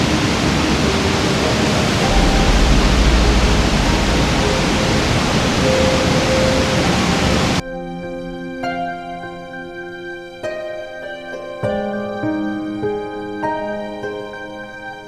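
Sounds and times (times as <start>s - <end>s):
waterfall rushing: 0.0s - 7.6s
deep rumble: 0.9s - 7.6s.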